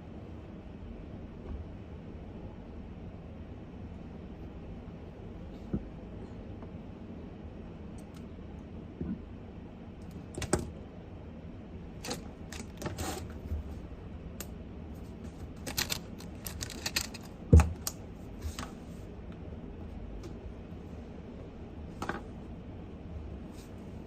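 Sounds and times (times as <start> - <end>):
rustling of handled objects: 15.0 - 19.1.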